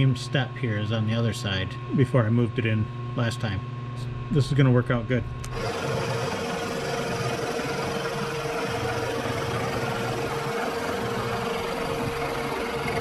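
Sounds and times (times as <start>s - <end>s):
milling machine whining: 5.4s - 13.0s.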